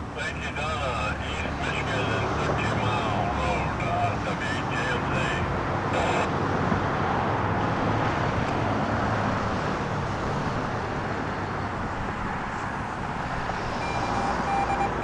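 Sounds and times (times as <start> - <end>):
road traffic: 0.0 - 15.0
faint high beeping: 13.8 - 15.0.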